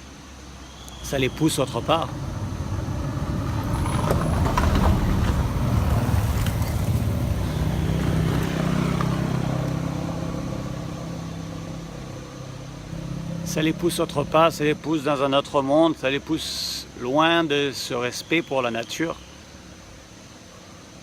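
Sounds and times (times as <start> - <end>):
vehicle passing by: 1.0 - 16.4.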